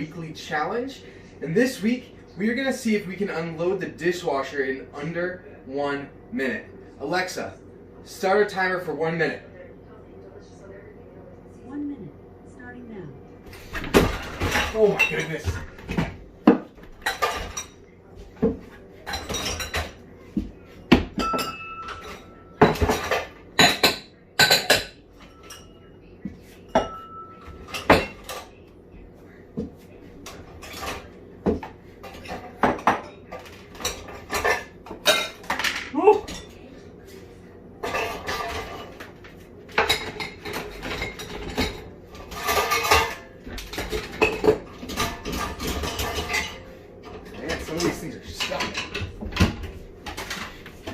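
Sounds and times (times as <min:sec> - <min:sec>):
dishes and cutlery clattering: 0:13.5 - 0:28.7, 0:29.6 - 0:36.7, 0:37.8 - 0:50.9.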